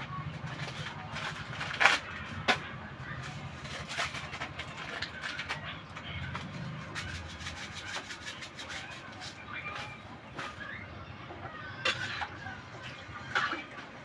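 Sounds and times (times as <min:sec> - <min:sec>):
kitchen utensils clinking: 0:11.6 - 0:14.0.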